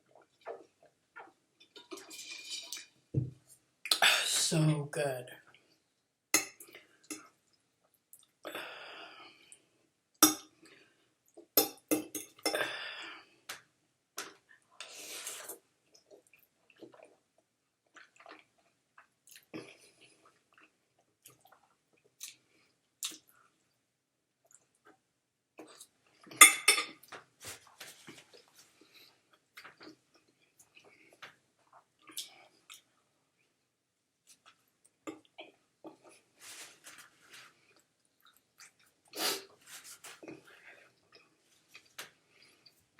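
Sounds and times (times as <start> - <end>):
chewing spaghetti: 14.3 - 23.7, 37.5 - 42.9
cutlery clinking on a dish: 26.4 - 27.0.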